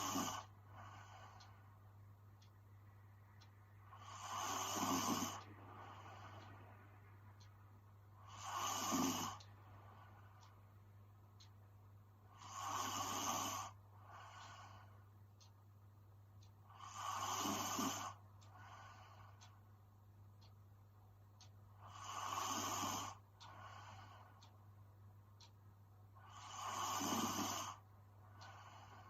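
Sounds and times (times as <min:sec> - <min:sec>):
woman snoring: 0:00.0 - 0:01.1, 0:04.0 - 0:06.4, 0:08.2 - 0:09.4, 0:12.3 - 0:14.6, 0:16.7 - 0:18.2, 0:21.8 - 0:23.2, 0:26.2 - 0:27.8
soft breath: 0:00.0 - 0:10.7, 0:12.2 - 0:15.5, 0:16.6 - 0:19.7, 0:21.8 - 0:24.6, 0:26.2 - 0:29.0.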